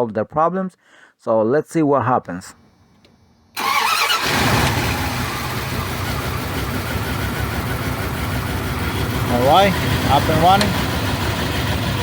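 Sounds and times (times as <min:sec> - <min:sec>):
truck engine idling: 0:03.6 - 0:12.0.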